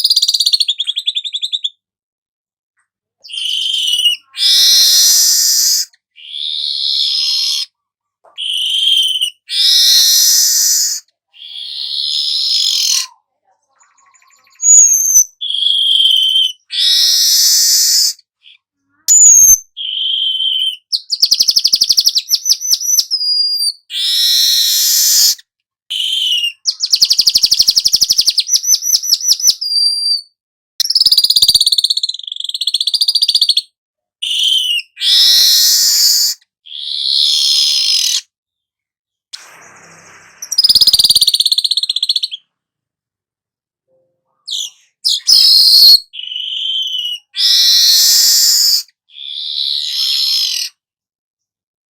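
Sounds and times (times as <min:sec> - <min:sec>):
weaver bird chattering song: 0:00.0 - 0:01.7, 0:03.3 - 0:07.7, 0:19.1 - 0:25.4, 0:26.0 - 0:30.2, 0:30.8 - 0:33.6, 0:39.8 - 0:42.4, 0:44.5 - 0:50.7.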